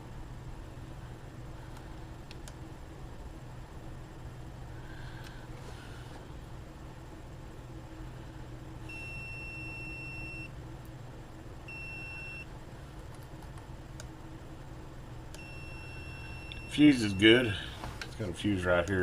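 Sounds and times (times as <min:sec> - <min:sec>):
multimeter continuity beeps: 0:08.8 - 0:10.6, 0:11.7 - 0:12.5, 0:15.3 - 0:17.3.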